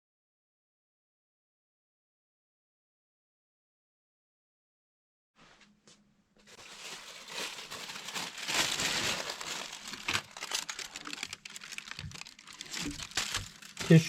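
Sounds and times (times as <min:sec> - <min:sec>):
packing material crinkling: 0:06.4 - 0:14.0.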